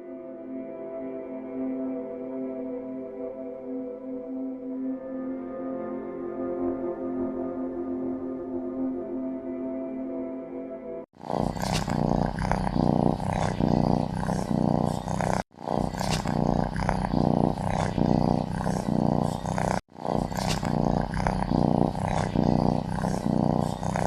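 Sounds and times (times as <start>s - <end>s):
loud rough snoring: 11.2s - 24.0s.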